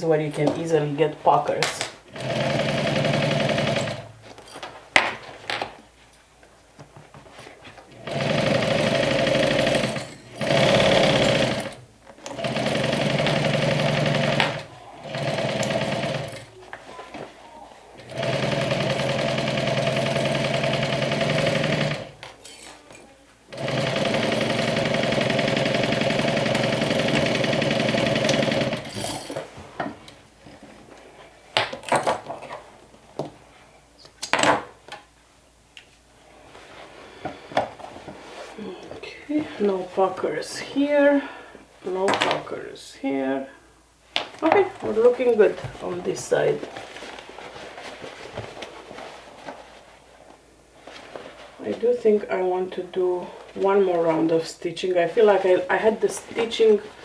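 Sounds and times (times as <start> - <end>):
sewing machine stitching: 1.6 - 4.1, 7.9 - 16.6, 18.0 - 22.7, 23.5 - 29.5.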